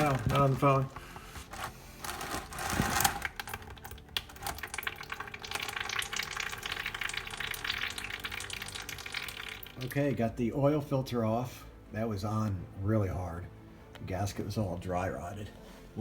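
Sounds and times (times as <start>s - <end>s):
oil dripping and trickling: 3.2s - 10.2s.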